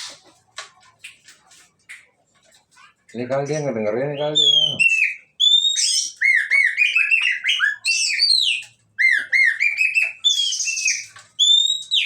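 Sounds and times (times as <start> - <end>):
bird singing whistled notes: 4.1 - 12.0.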